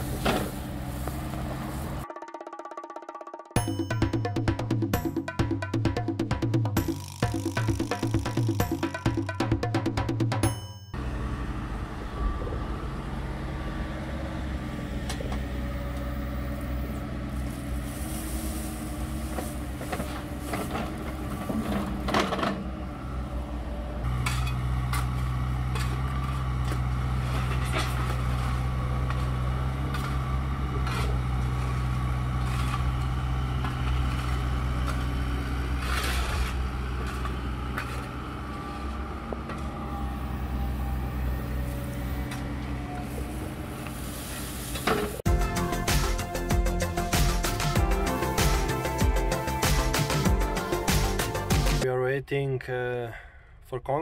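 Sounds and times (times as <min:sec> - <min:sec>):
heavy equipment engine running: 0:00.0 - 0:02.0, 0:11.0 - 0:51.8.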